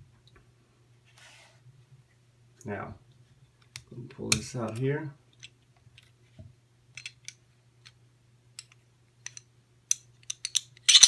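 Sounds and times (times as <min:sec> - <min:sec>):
metal pistol parts clicking: 0:08.6 - 0:11.0.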